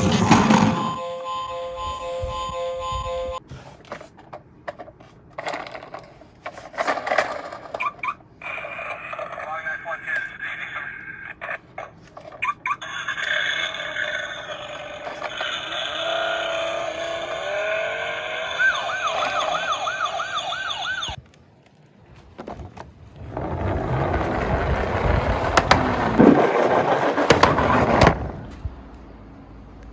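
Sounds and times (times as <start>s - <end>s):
toy cars rattling down a slope: 5.4s - 21.1s, 23.2s - 28.2s
police siren yelp: 12.4s - 21.2s.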